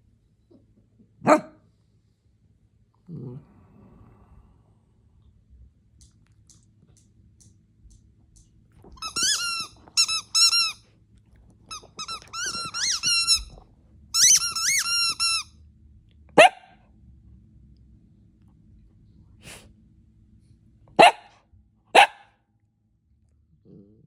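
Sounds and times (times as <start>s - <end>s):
squeaky toy squeaking: 9.0s - 10.8s, 11.7s - 15.5s.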